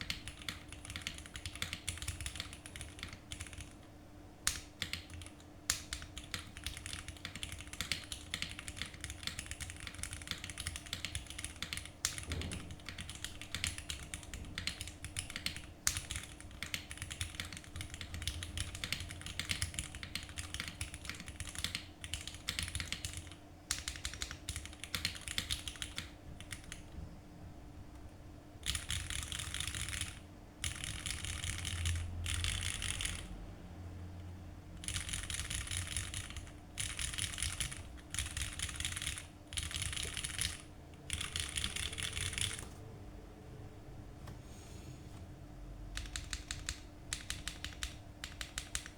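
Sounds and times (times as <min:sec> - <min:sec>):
mechanical keyboard typing: 0:00.0 - 0:26.9, 0:28.6 - 0:33.4, 0:34.8 - 0:42.8, 0:45.9 - 0:48.9.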